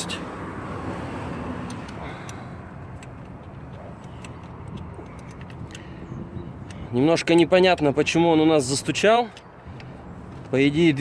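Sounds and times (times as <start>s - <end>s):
wrench clicking on bolts: 1.6s - 5.9s.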